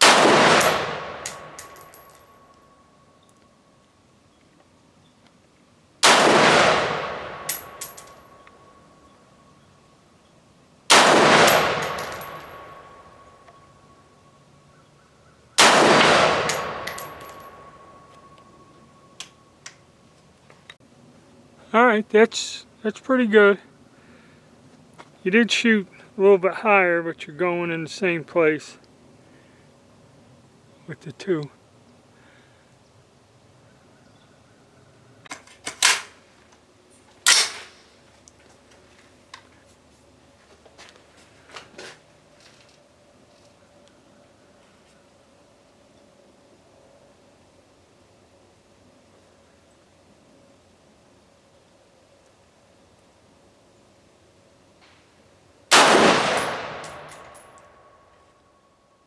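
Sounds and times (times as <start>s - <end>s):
rifle shot with echo: 0.0s - 2.1s, 6.0s - 8.1s, 10.9s - 13.0s, 15.6s - 17.8s, 55.7s - 57.5s.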